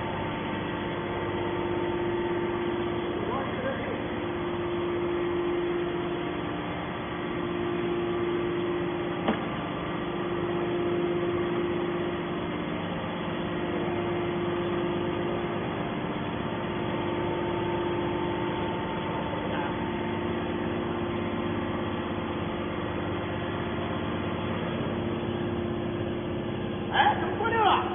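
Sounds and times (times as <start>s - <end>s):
baling machinery humming: 0.0s - 27.9s
sharp knock: 9.2s - 9.5s.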